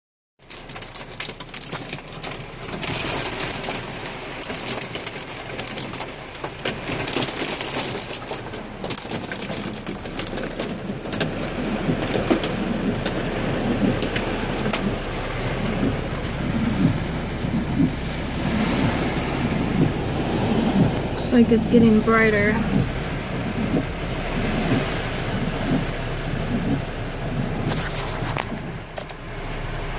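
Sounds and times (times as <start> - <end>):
hailstones pelting: 0.4 - 22.8
hiss of falling rain: 0.4 - 29.9.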